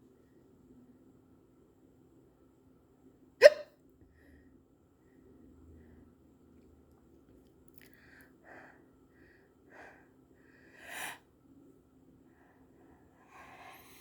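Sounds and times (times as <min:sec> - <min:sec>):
sharp hiccup breaths: 0:03.4 - 0:03.7.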